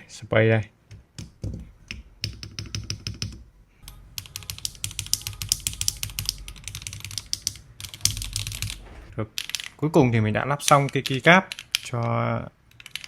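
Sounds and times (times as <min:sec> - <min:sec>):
keyboard keycaps clacking: 0:00.8 - 0:08.8, 0:10.6 - 0:13.0.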